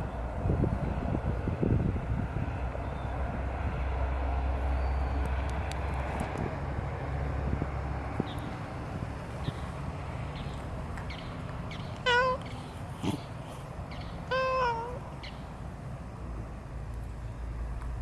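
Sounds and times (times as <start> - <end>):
cat meowing: 12.0 - 13.3, 14.3 - 15.1.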